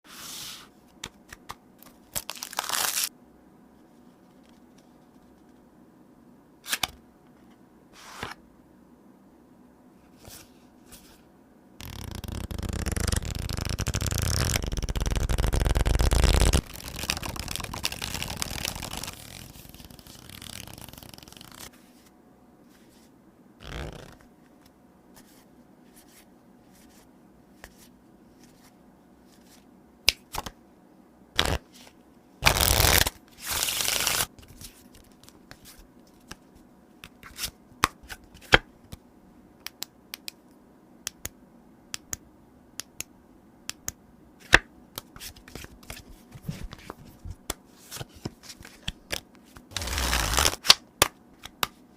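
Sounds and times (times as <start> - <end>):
playing cards rustling: 0.5 - 3.1, 11.8 - 22.1, 23.6 - 24.6, 32.5 - 36.4, 45.1 - 50.8
cards shuffling: 0.9 - 3.1, 11.8 - 21.8, 23.6 - 25.4, 31.4 - 31.6, 32.4 - 36.4, 44.5 - 51.8.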